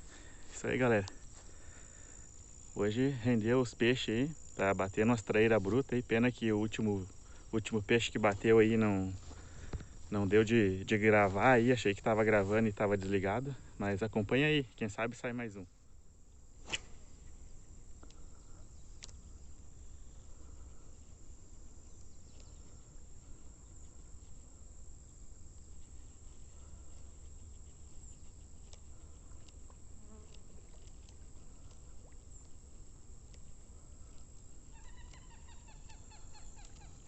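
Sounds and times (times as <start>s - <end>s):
insects shrill buzzing: 0.0s - 31.6s, 33.7s - 37.0s
faint clicks: 18.0s - 19.3s, 36.6s - 36.9s.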